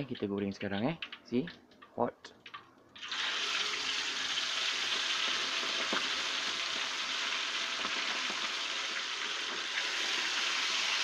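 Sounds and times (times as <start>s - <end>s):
food frying in hot oil: 2.4s - 11.0s.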